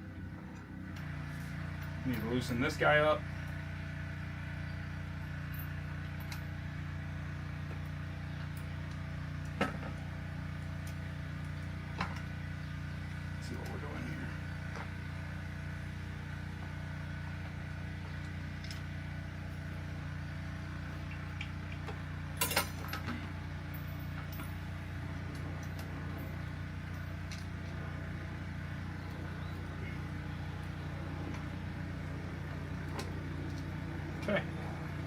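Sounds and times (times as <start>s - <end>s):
low background hum: 0.0s - 35.0s
metal clinks of bike hardware: 22.4s - 24.6s.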